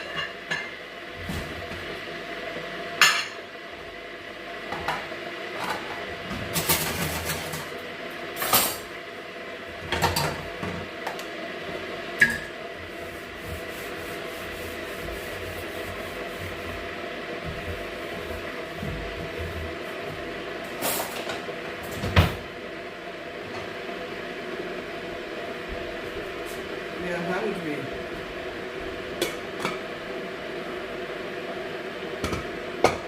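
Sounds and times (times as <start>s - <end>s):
pots and utensils clinking: 0.0s - 0.8s, 12.2s - 12.6s
steady background hum: 0.0s - 33.0s.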